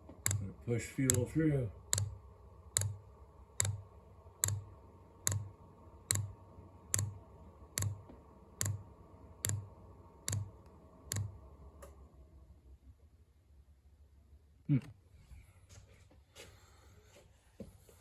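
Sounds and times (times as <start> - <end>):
fuel pump clicking: 0.0 - 3.0, 3.6 - 6.3, 9.4 - 11.4
faint steady hum: 0.0 - 18.0.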